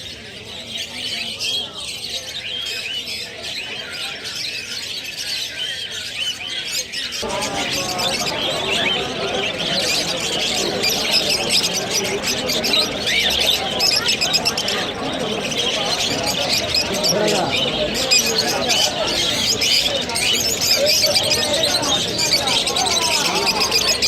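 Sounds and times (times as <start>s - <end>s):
caged birds chirping and squawking: 0.0s - 24.0s.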